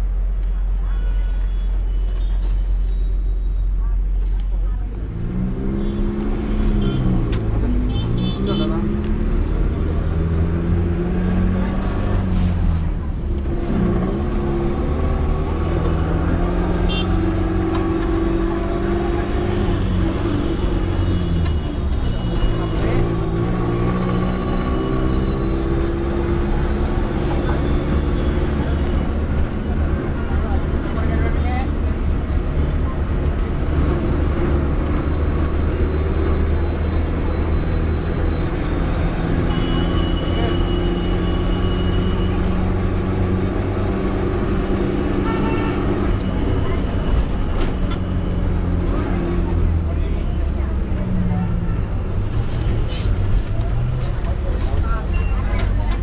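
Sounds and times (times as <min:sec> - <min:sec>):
bus engine droning: 0:00.0 - 0:56.0
road and cabin rattle: 0:50.6 - 0:56.0.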